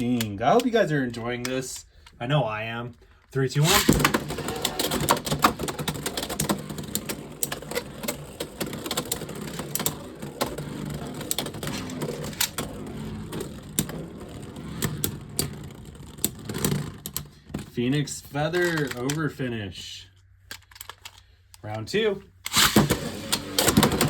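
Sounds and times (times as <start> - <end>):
spinning tops clacking: 3.6 - 17.2
spinning tops whirring: 3.6 - 17.4, 22.5 - 24.0.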